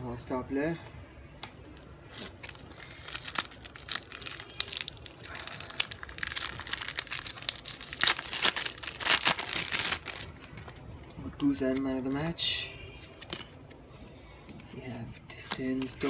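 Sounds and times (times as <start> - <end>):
foil wrapper tearing and crinkling: 2.1 - 10.8.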